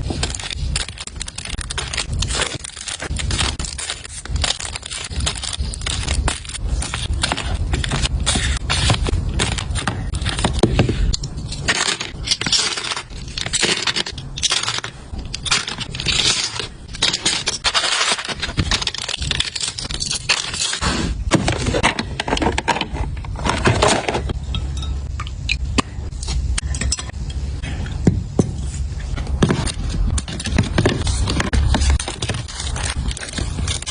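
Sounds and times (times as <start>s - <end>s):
plastic packaging crinkling: 0.0s - 20.9s, 29.4s - 33.9s.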